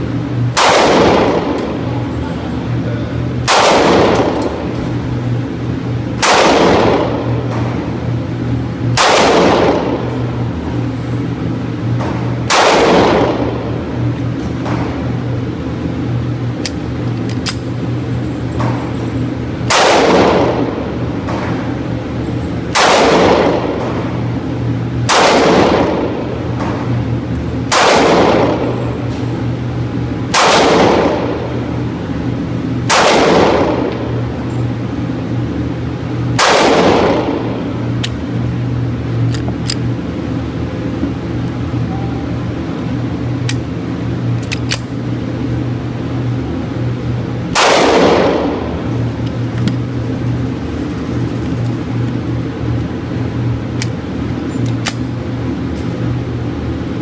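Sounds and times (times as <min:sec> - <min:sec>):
steady low hum: 0:00.0 - 0:57.0
pistol shots: 0:00.5 - 0:01.8, 0:03.4 - 0:04.8, 0:06.2 - 0:07.9, 0:08.9 - 0:10.1, 0:12.0 - 0:13.6, 0:19.6 - 0:21.7, 0:22.7 - 0:24.1, 0:25.0 - 0:26.8, 0:27.7 - 0:28.8, 0:30.3 - 0:31.6, 0:32.8 - 0:34.2, 0:36.4 - 0:37.6, 0:47.5 - 0:48.8.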